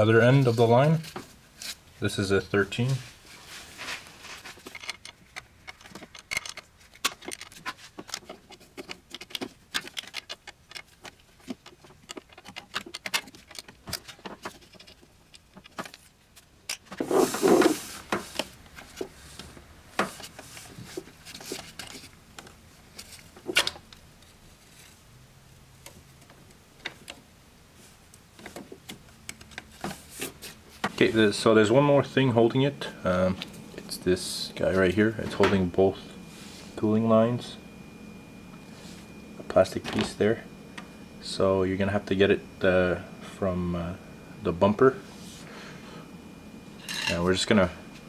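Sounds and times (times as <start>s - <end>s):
metal tools clinking: 46.8s - 47.3s.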